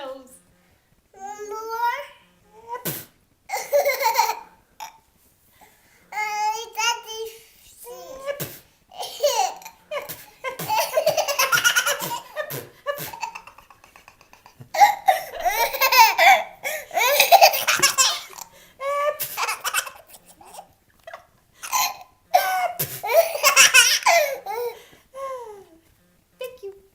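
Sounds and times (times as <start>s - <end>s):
young child laughing: 2.8s - 4.5s, 8.2s - 25.5s.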